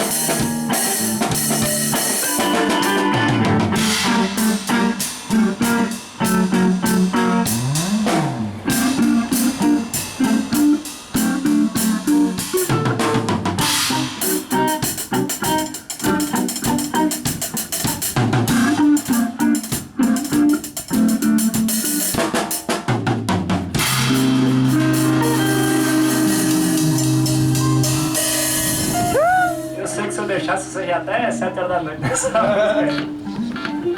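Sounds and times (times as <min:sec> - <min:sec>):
bass line: 0:00.0 - 0:21.9, 0:23.2 - 0:32.0
drum kit beat: 0:00.0 - 0:30.8.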